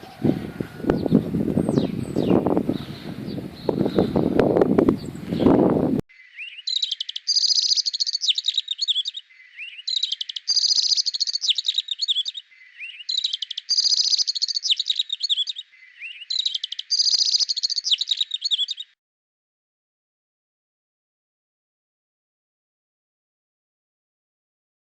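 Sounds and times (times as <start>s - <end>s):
songbird singing: 0.0s - 19.0s.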